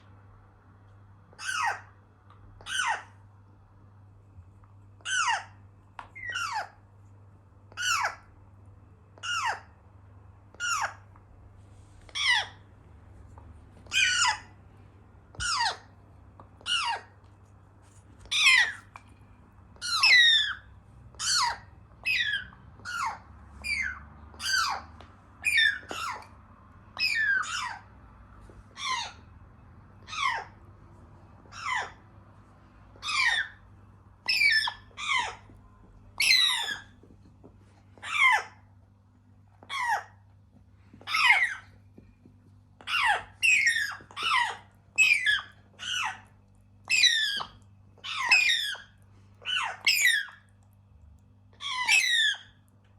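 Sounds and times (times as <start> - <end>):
parrot chicks squawking: 1.3 - 3.2, 5.0 - 6.8, 7.7 - 8.4, 9.2 - 9.8, 10.5 - 11.2, 12.0 - 12.7, 13.8 - 14.7, 15.3 - 17.2, 18.1 - 19.1, 19.8 - 32.3, 32.9 - 37.1, 37.9 - 38.8, 39.6 - 40.3, 40.9 - 41.8, 42.8 - 50.6, 51.4 - 52.7.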